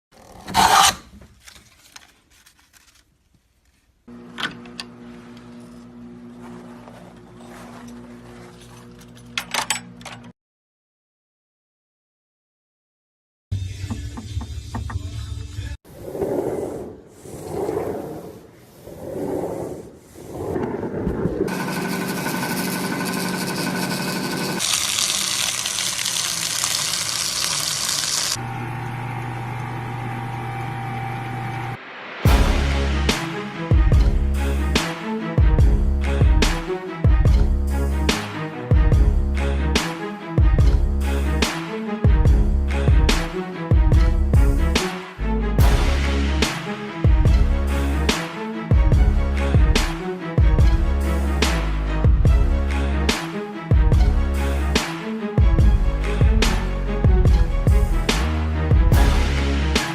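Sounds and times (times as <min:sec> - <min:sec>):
machine humming: 0:21.5 - 0:31.8.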